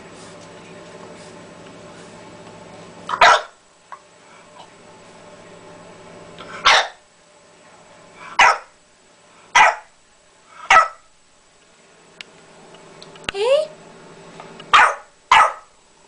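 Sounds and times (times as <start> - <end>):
puppy barking harshly: 3.1 - 3.6, 6.6 - 7.0, 8.4 - 8.7, 9.5 - 9.9, 10.7 - 11.1, 14.7 - 15.7.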